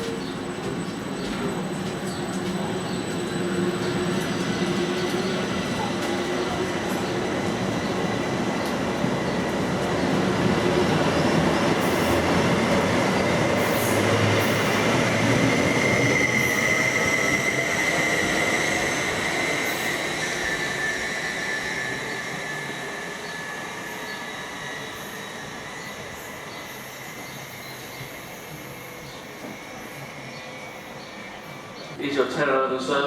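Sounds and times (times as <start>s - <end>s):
train rumbling past: 0.0s - 33.0s
high wheel squeal: 13.1s - 31.5s.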